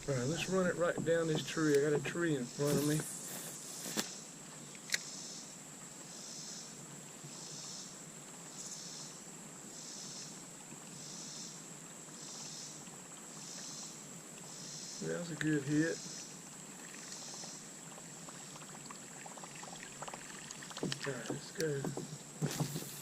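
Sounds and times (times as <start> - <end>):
insect chorus: 0.0 - 23.0
sharp clicks: 20.8 - 23.0.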